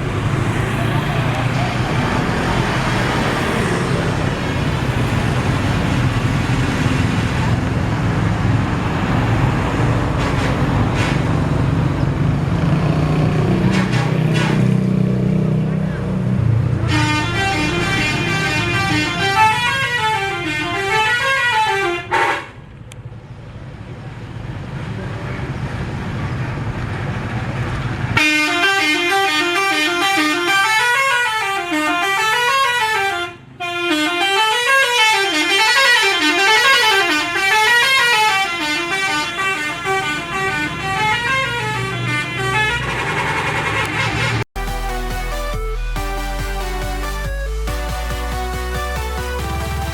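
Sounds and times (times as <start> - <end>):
musical bus horns warbling: 16.7 - 22.8, 28.1 - 49.9.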